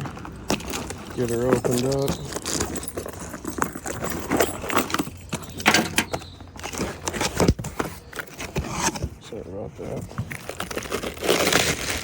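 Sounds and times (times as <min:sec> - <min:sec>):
packaging rustling: 0:10.2 - 0:12.0.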